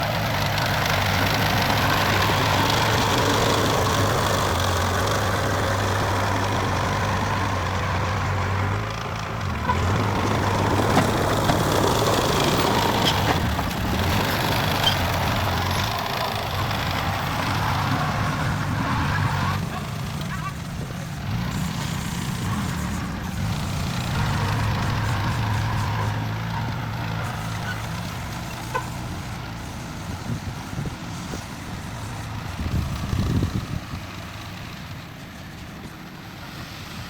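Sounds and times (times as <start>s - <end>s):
construction machine engine humming: 0.0s - 37.0s.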